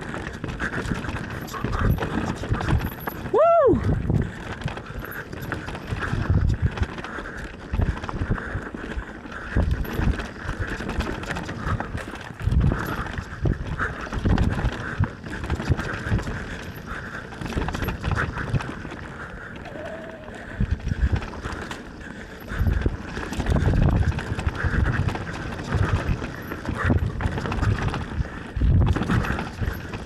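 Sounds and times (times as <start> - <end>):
bike rattling and thudding: 0.0 - 30.0
tyres over dirt and rocks: 0.0 - 30.0.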